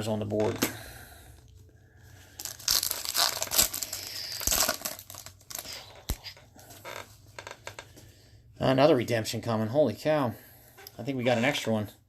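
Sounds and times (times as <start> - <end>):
foil wrapper crinkling and tearing: 2.2 - 6.4.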